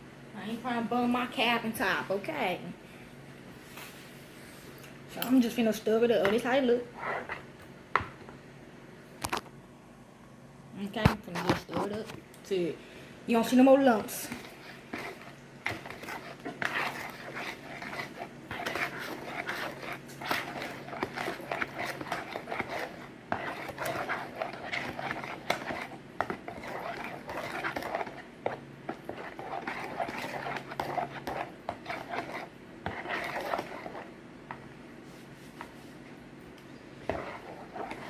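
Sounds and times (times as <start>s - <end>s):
faint low hum: 0.0s - 38.0s
spoon scraping in a bowl: 6.2s - 7.5s, 13.9s - 34.1s, 37.0s - 38.0s.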